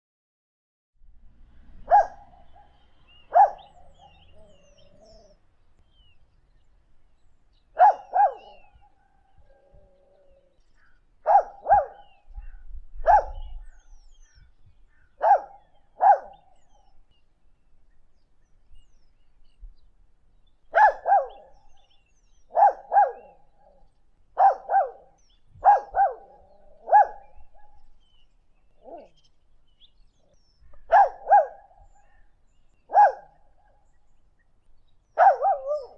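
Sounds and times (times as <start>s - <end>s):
birds chirping faintly: 1.0s - 35.9s
dog barking: 1.8s - 4.3s, 7.8s - 9.0s, 11.2s - 12.1s, 13.0s - 13.5s, 15.2s - 16.4s, 20.7s - 21.6s, 22.5s - 23.4s, 24.4s - 27.8s, 28.8s - 29.2s, 30.9s - 31.7s, 32.9s - 33.4s, 35.2s - 35.9s.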